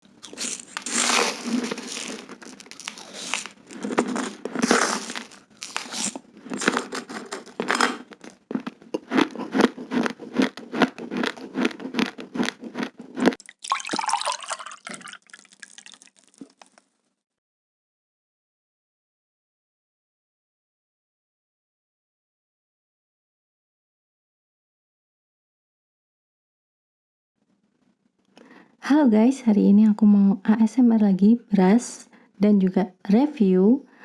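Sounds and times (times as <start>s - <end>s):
chewing raw rice grains: 0.0s - 16.8s.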